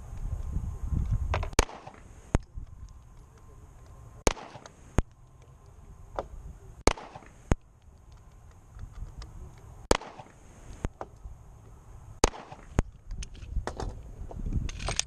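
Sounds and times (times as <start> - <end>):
pistol shots: 1.5 - 2.1, 4.2 - 4.8, 6.8 - 7.5, 9.9 - 10.4, 12.2 - 12.8.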